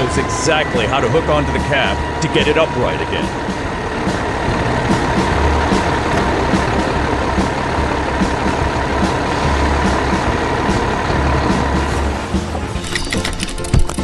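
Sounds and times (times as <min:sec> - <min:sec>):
high whine: 0:00.0 - 0:11.2
truck engine running: 0:00.0 - 0:14.0.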